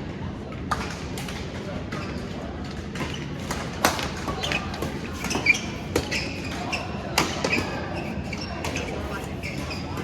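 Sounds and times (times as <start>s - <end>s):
shoes squeaking on court floor: 3.0s - 10.0s.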